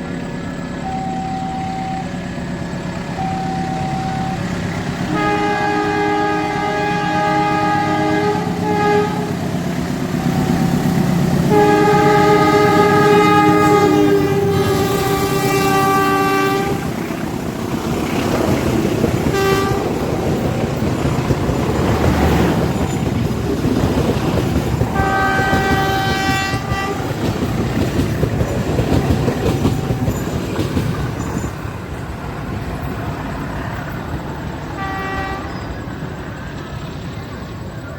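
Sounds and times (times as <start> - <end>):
train wheels rumbling on rails: 0.0 - 37.9
locomotive air horn blasts: 3.2 - 9.4, 11.5 - 17.0, 19.2 - 20.0, 24.9 - 27.1, 34.8 - 35.7.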